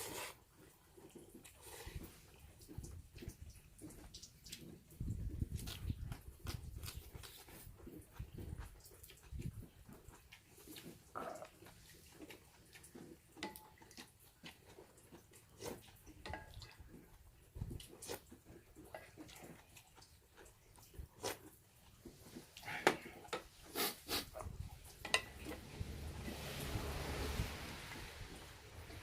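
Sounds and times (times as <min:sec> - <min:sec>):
slurping and chewing: 0:00.0 - 0:29.0
soft hiss: 0:22.6 - 0:29.0.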